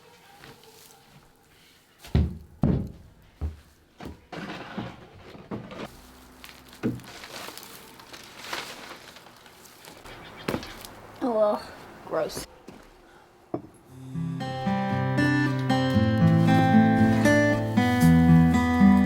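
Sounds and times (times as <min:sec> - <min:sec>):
straw rustling: 0:00.0 - 0:02.4, 0:05.7 - 0:13.1, 0:15.3 - 0:19.0
dull thumps: 0:02.0 - 0:06.0.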